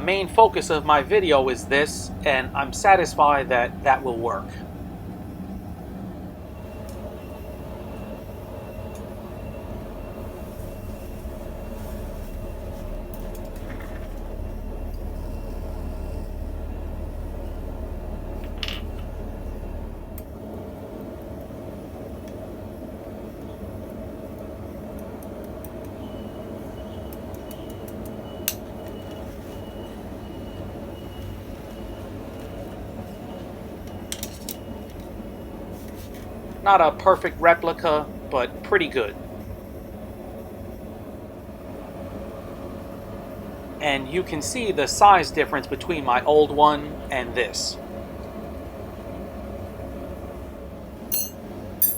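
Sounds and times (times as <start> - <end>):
steady mechanical hum: 0.0 - 51.9
low rumble: 4.6 - 20.5.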